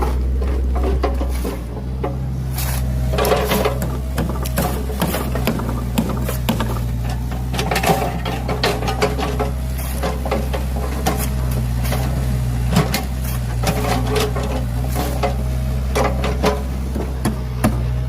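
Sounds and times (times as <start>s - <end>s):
bucket knocks and clanks: 0.0s - 17.9s
excavator engine running: 0.0s - 18.0s.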